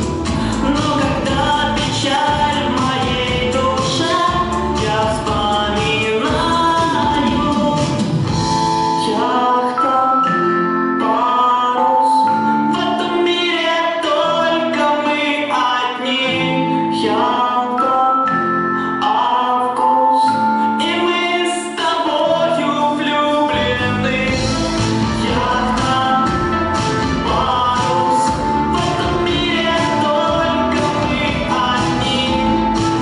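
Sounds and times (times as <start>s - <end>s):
person singing: 0.0s - 33.0s
instrumental accompaniment: 23.3s - 33.0s.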